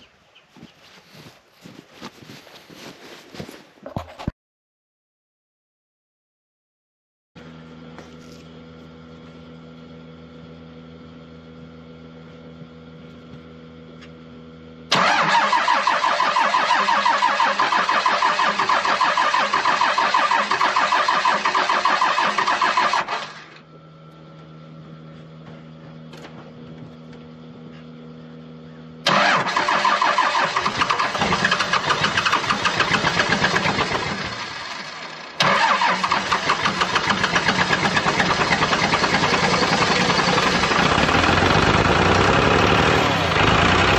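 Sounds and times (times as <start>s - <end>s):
diesel engine starter cranking: 14.9s - 23.6s, 29.0s - 43.9s.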